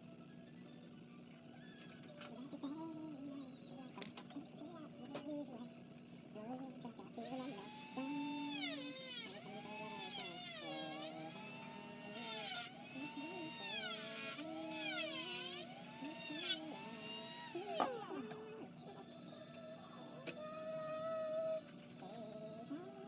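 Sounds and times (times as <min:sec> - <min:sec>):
rotary tool cutting plastic: 0:07.1 - 0:19.4.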